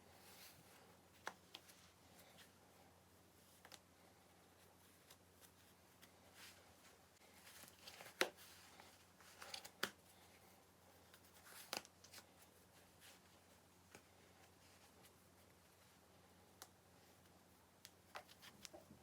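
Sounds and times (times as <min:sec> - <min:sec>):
soft rustling: 0:00.0 - 0:19.0.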